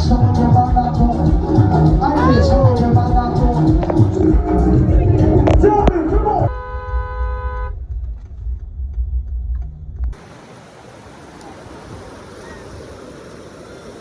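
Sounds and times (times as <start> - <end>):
wind noise on microphone: 0.0 - 10.2
ocean surf: 10.2 - 14.0.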